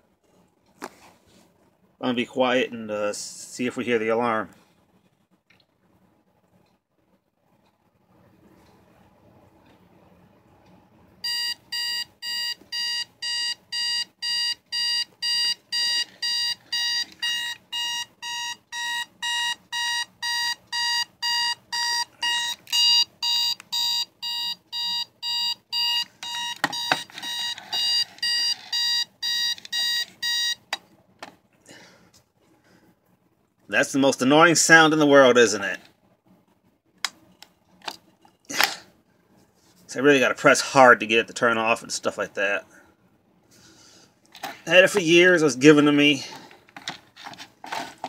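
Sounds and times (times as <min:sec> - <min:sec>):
alarm clock beeping: 0:11.2 - 0:30.7.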